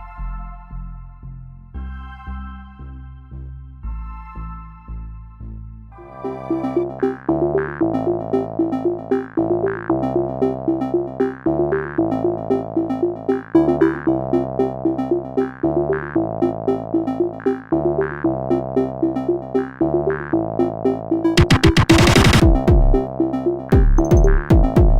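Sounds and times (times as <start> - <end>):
synthesizer music: 6.0 - 24.9.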